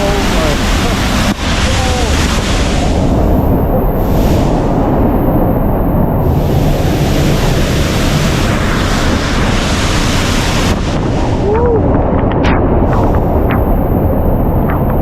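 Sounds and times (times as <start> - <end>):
waterfall rushing: 0.0 - 4.8, 6.2 - 12.0
wind buffeting microphone: 0.0 - 15.0.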